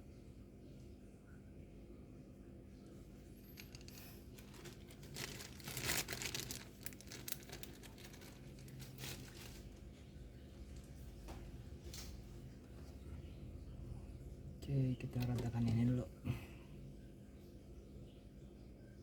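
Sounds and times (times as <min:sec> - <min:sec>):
crinkling and rustling material: 0:03.4 - 0:13.0, 0:15.0 - 0:16.1.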